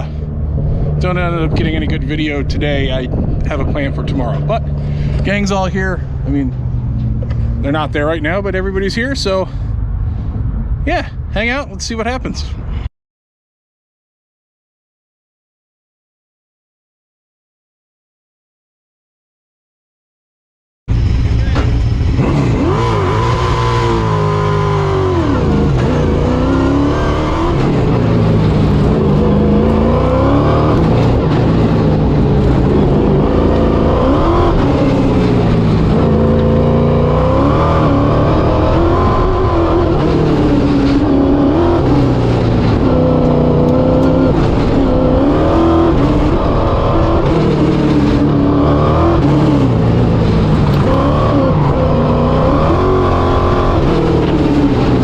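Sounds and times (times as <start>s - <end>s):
race car engine revving: 21.0s - 55.0s.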